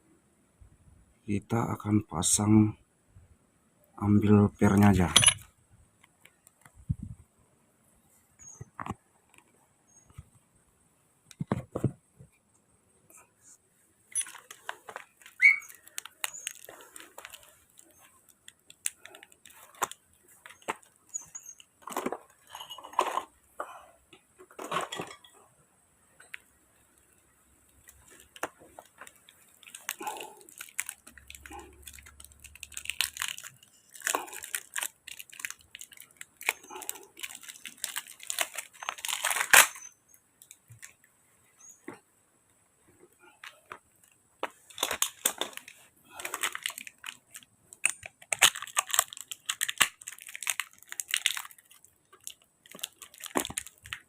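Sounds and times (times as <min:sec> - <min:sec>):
clicks and scrapes of small parts: 0:13.4 - 0:23.4, 0:27.6 - 0:41.0, 0:43.4 - 0:54.0.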